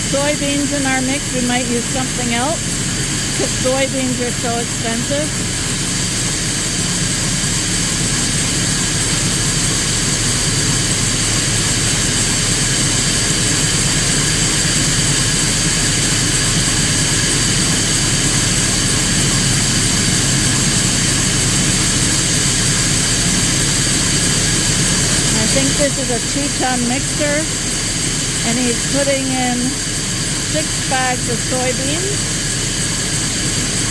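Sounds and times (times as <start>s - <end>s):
feed mixer droning: 0.0s - 33.9s
high machine whine: 0.0s - 33.9s.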